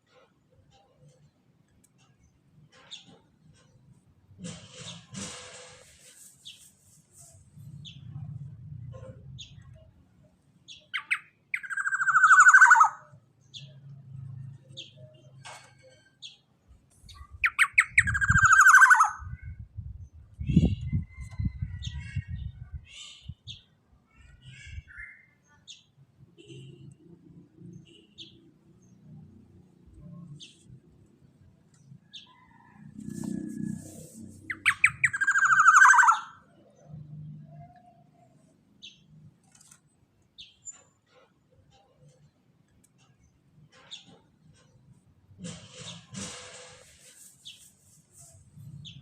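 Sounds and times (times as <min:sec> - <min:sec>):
harsh buzzy bird call: 0:34.5 - 0:36.4.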